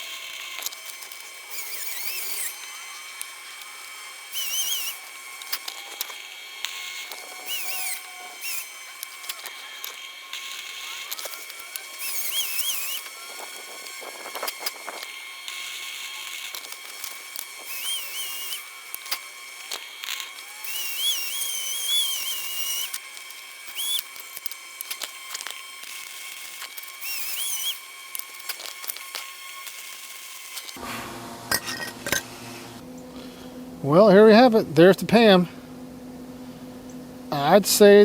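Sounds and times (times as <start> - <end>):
welder arc crackling: 0.0 - 31.0
sharp clicks: 0.5 - 30.8.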